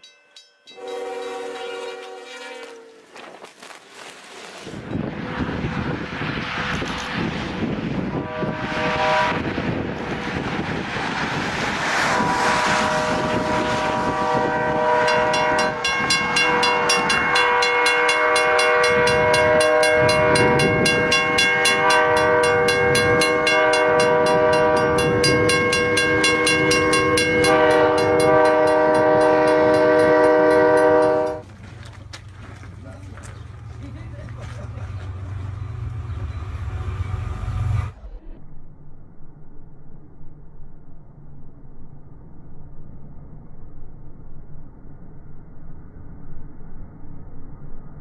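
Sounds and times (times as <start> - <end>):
locomotive air horn chord: 0.7 - 3.2, 8.1 - 10.0, 12.0 - 31.5
rushing noise: 2.7 - 31.6, 34.9 - 48.0.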